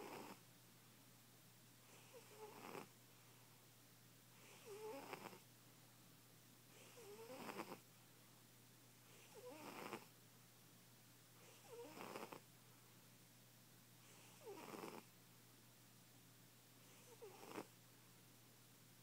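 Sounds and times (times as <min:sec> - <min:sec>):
cat snoring: 0:00.0 - 0:00.4, 0:01.9 - 0:02.9, 0:04.4 - 0:05.4, 0:06.7 - 0:07.8, 0:09.1 - 0:10.1, 0:11.4 - 0:12.4, 0:14.0 - 0:15.1, 0:16.8 - 0:17.7.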